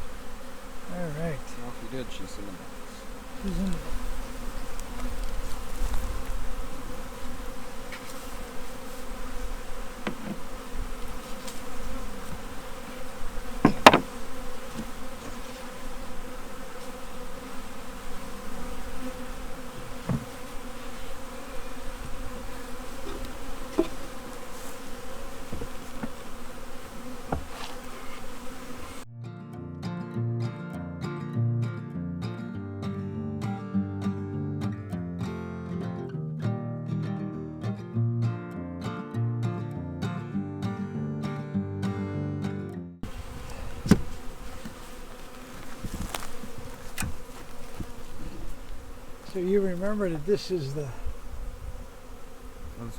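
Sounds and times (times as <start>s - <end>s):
bees buzzing: 0.0s - 29.1s, 43.0s - 52.9s
sharp knock: 13.6s - 14.1s
acoustic guitar music: 28.6s - 43.1s.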